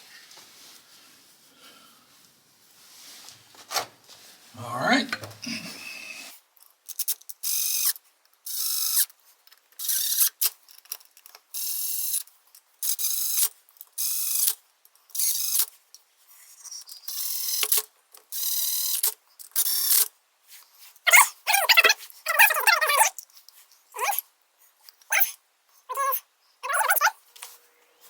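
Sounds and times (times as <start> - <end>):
ratchet wrench clicking: 6.9 - 9.1, 9.8 - 10.5.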